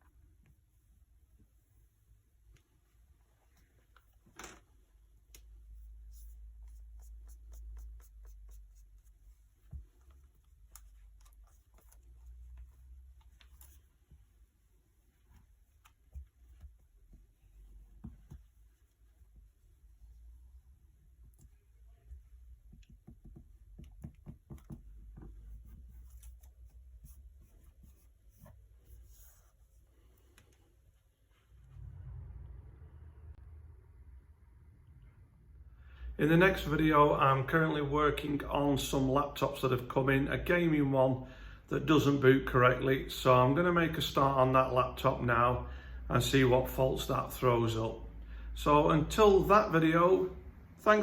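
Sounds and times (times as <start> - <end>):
low steady hum: 0.0 - 42.0
faint light taps and clicks: 21.2 - 29.2
low hum: 30.9 - 36.4.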